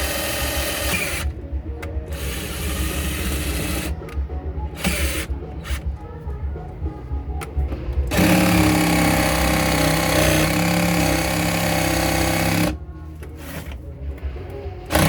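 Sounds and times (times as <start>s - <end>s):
power tool cutting: 0.0s - 1.3s, 2.1s - 4.0s, 4.8s - 5.8s, 8.1s - 12.8s.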